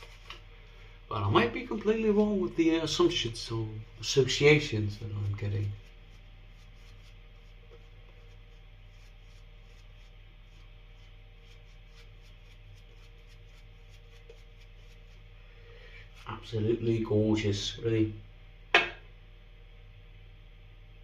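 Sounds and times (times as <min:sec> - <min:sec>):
shaving brush rubbing strokes: 0:00.0 - 0:00.4, 0:01.4 - 0:16.7
steady low hum: 0:00.0 - 0:21.0.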